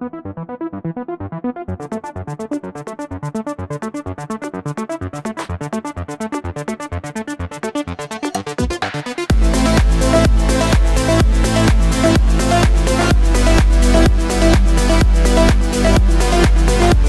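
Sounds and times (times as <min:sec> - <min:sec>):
pulsing synthesizer line: 0:09.3 - 0:17.0
rising synth sweep: 0:09.3 - 0:17.0.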